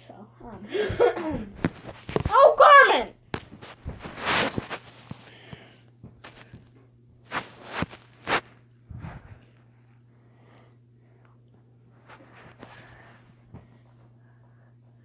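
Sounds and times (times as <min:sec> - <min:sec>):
steady low hum: 0:00.0 - 0:15.0
short scuffs: 0:07.3 - 0:08.5.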